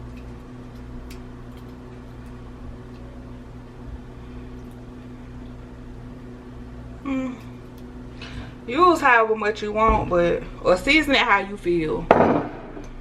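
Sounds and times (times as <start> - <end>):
appliance hum: 0.0 - 13.0.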